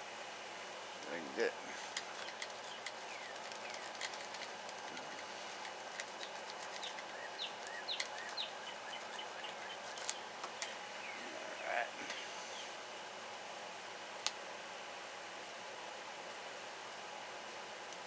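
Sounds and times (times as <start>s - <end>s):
high insect whine: 0.0s - 17.8s
birds chirping: 0.8s - 12.9s
lock pick clicking in padlock: 1.9s - 10.8s.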